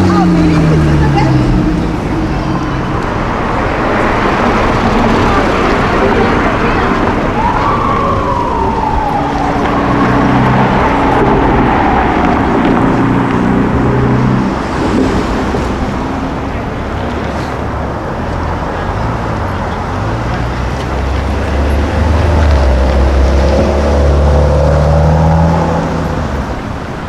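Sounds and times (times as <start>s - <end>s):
car engines in street traffic: 0.0s - 27.0s
siren wailing: 4.9s - 14.6s.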